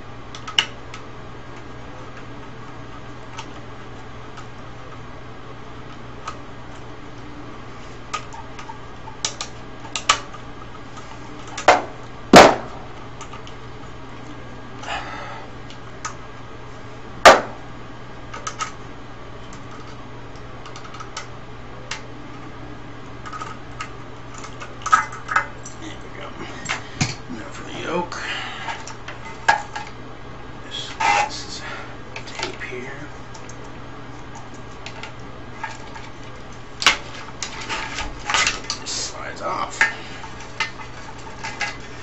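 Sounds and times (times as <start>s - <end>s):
faint steady hum: 0.0s - 42.0s.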